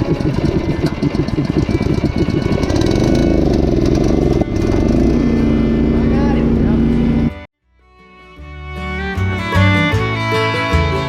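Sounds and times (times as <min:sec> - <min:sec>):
engine running loud and rough: 0:00.0 - 0:07.5.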